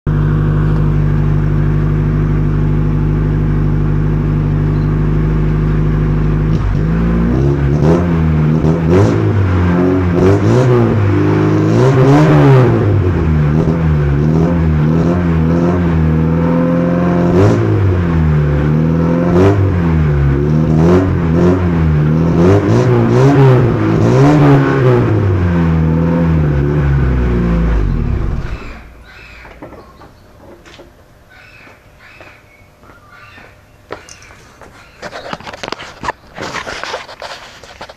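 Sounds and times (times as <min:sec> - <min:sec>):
car engine idling and revving: 0:00.1 - 0:29.5.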